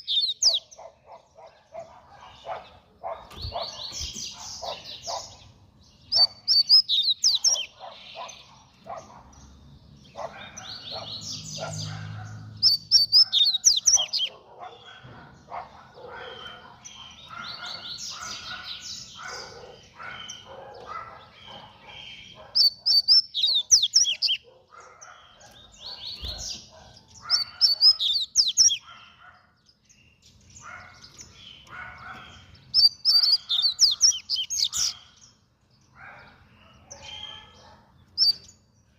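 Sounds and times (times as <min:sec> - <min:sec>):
soft bird twittering: 0:00.0 - 0:38.9
bird singing rapid high notes: 0:25.0 - 0:29.0.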